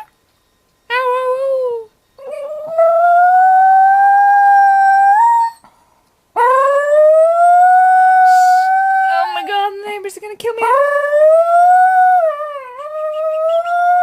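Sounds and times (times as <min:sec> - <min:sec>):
dog howling: 0:02.2 - 0:05.6, 0:06.4 - 0:09.6, 0:10.6 - 0:14.0.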